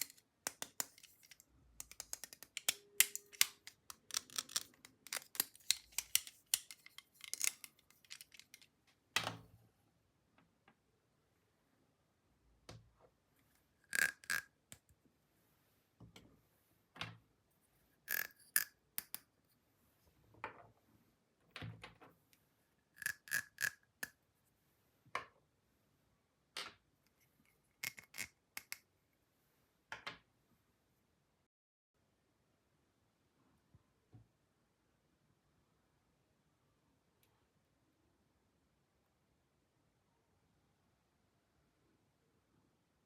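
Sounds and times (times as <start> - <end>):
plastic toy pieces clicking: 0.0 - 8.7, 13.9 - 14.5, 18.1 - 19.2, 23.0 - 23.8, 27.8 - 28.8.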